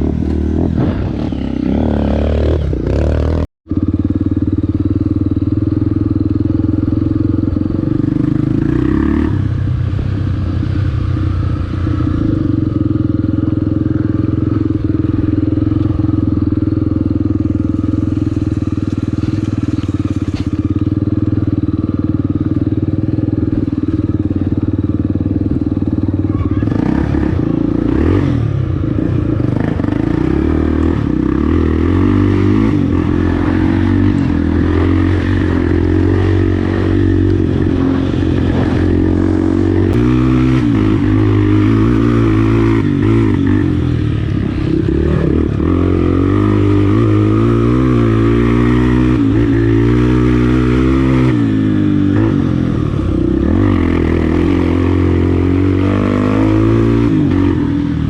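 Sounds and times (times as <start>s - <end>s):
motorcycle engine revving: 0.0s - 58.0s
clatter over rough ground: 15.6s - 22.0s.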